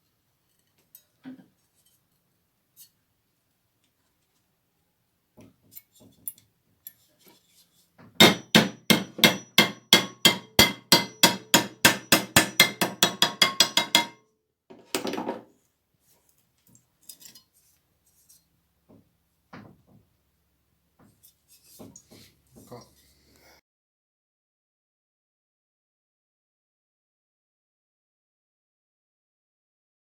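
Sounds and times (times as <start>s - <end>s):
hammer striking sheet steel: 8.2s - 14.2s.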